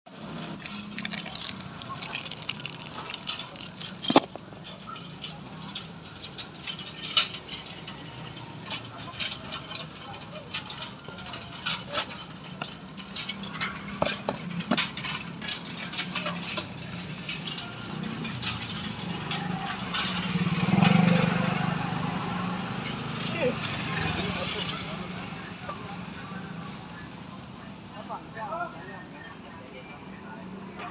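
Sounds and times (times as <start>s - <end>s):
mechanical clicking and knocking: 0.2s - 20.7s.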